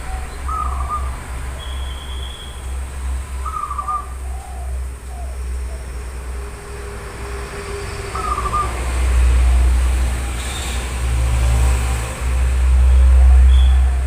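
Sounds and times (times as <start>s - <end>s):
faint bird chirp: 0.0s - 2.8s, 3.4s - 5.9s.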